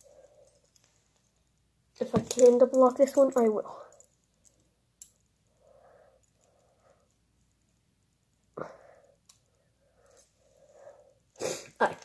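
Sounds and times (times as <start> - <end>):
soft breaths: 0.0 - 1.6, 3.6 - 7.8, 8.4 - 11.8.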